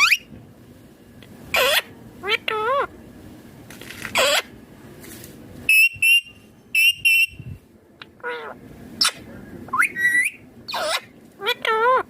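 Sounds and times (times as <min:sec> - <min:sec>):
parrot giving shrill calls: 0:00.0 - 0:00.3, 0:01.5 - 0:02.9, 0:04.1 - 0:04.5, 0:05.7 - 0:07.4, 0:08.2 - 0:12.0.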